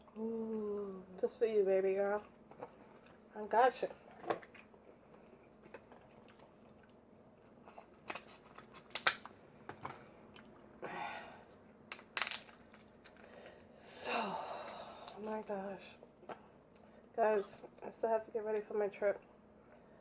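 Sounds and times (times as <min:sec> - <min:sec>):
chewing: 0:02.2 - 0:03.3, 0:03.9 - 0:08.9
crab shell cracking: 0:07.9 - 0:09.4, 0:11.9 - 0:13.7.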